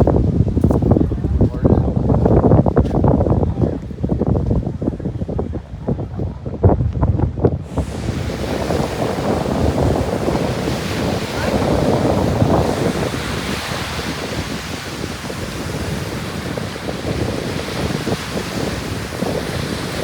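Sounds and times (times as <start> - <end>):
wind buffeting microphone: 0.0 - 20.0
ocean surf washing onto beach: 7.5 - 20.0.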